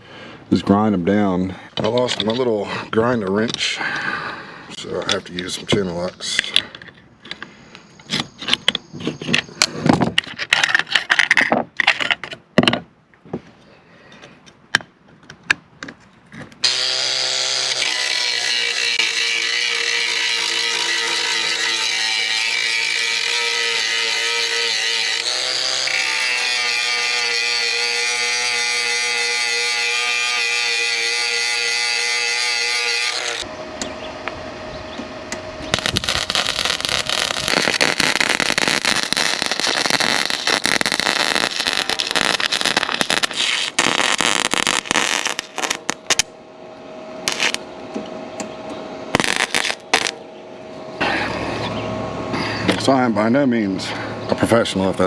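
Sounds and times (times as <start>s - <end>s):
angle grinder running: 16.6s - 33.5s, 35.6s - 46.3s, 47.2s - 47.7s, 49.2s - 50.2s
welding arc crackling: 16.6s - 33.5s, 35.6s - 46.3s, 47.2s - 47.7s, 49.1s - 50.2s.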